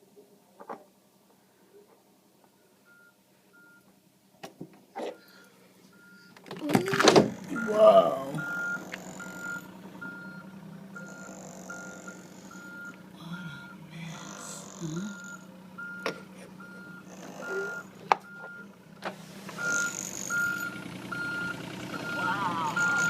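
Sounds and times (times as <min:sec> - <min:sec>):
reversing alarm beeping: 0:02.6 - 0:03.8, 0:05.2 - 0:06.4, 0:07.3 - 0:18.8, 0:19.6 - 0:23.0
low engine hum: 0:05.1 - 0:23.0.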